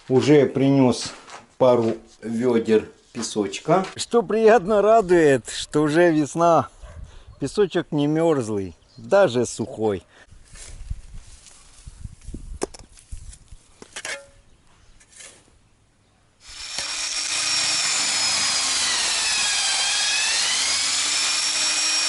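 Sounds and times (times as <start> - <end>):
electric drill mixing mortar: 16.4 - 22.0.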